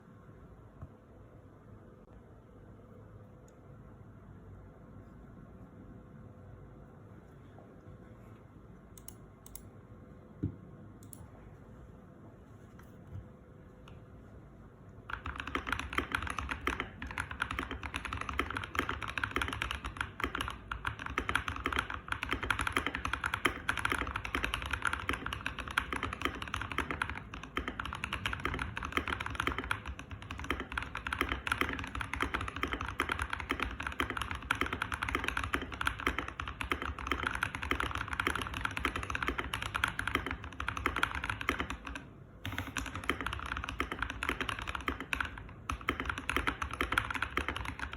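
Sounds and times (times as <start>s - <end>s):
fast mechanical keyboard typing: 15.0s - 47.9s.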